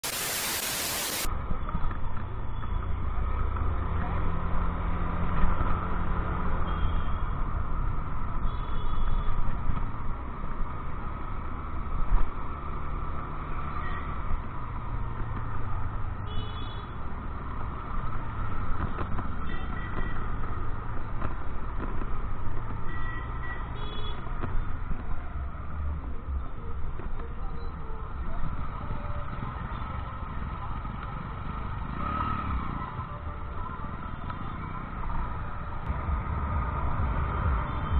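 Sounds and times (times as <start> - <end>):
burst of hiss: 0.0 - 1.3
traffic: 0.0 - 37.9.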